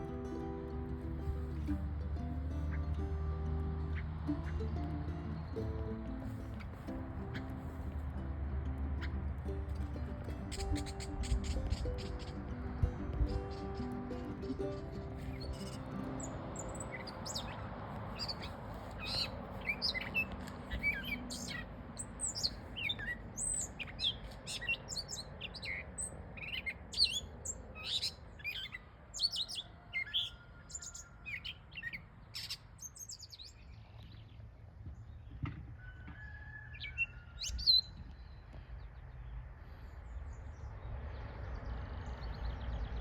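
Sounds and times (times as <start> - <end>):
small birds chirping: 8.9 - 35.4.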